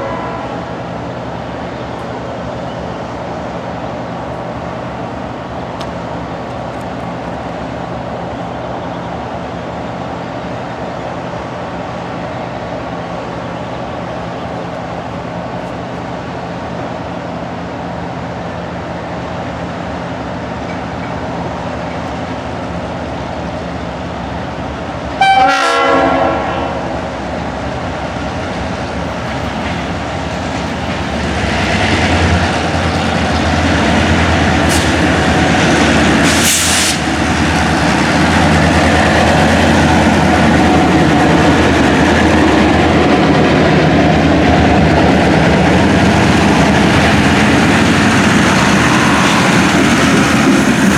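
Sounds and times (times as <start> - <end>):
train horn blast: 0.0 - 0.8, 25.2 - 27.1
diesel locomotive engine and rail noise: 0.0 - 50.9.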